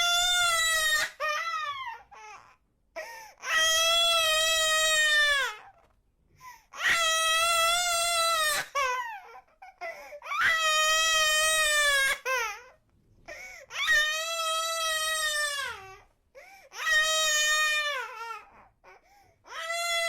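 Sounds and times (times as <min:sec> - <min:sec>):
sobbing catches of breath: 0:03.0 - 0:03.4, 0:13.2 - 0:13.7, 0:16.3 - 0:16.8.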